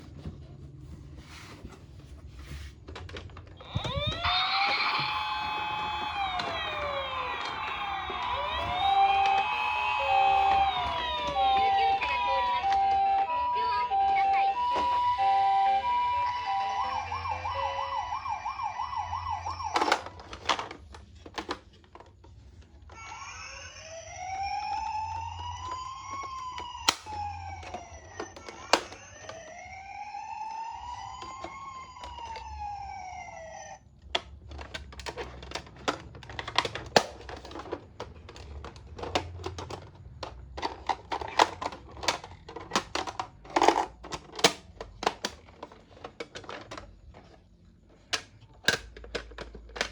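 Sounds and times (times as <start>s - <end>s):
toy electronic siren: 3.6s - 20.4s, 23.0s - 33.8s.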